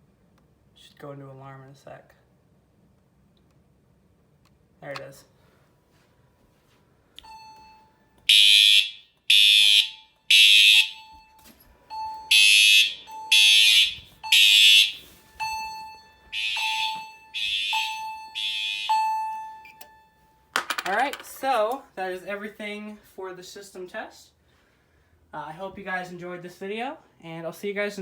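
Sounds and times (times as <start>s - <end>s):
fire alarm horns blasting: 7.2s - 20.4s.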